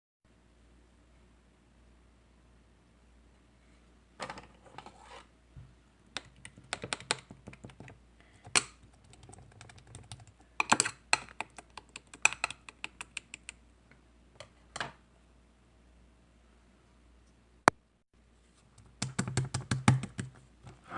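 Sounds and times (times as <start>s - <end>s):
quick sharp clicks and taps: 6.2s - 13.6s.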